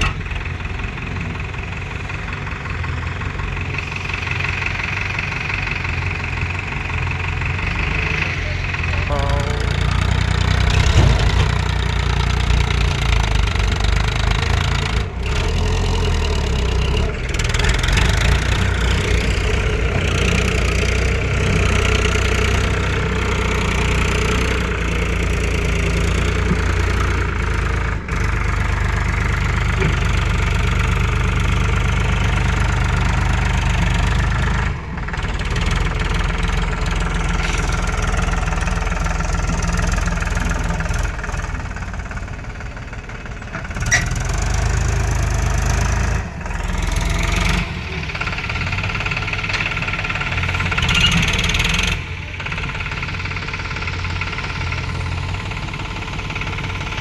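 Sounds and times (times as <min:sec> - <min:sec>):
diesel engine rumbling: 0:00.0 - 0:57.0.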